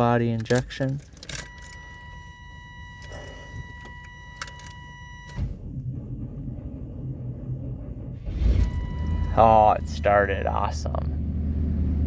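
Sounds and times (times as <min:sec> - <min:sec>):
car engine cranking and running: 0:00.0 - 0:12.0
electronic warning tone: 0:01.4 - 0:05.5, 0:08.3 - 0:10.4.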